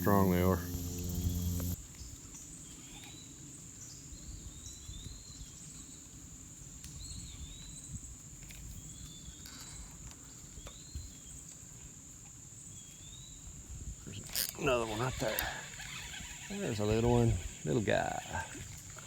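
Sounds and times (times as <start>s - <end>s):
creek current rushing: 0.0s - 1.8s
insect chorus chirping: 0.0s - 1.8s, 14.0s - 19.0s.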